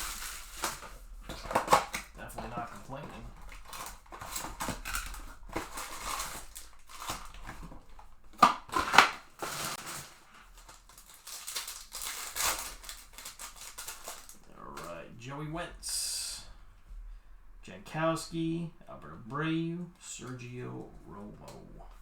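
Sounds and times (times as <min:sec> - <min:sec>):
sharp crinkles: 0:00.0 - 0:15.1
foil wrappers crinkling: 0:00.0 - 0:15.2.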